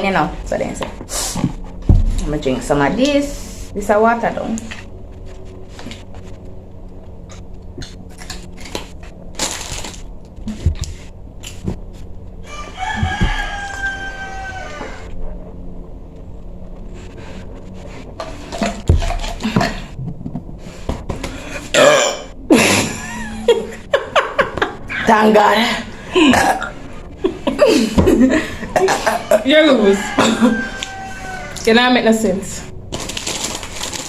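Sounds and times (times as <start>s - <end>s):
rooster crowing: 12.4s - 15.2s, 28.3s - 31.7s.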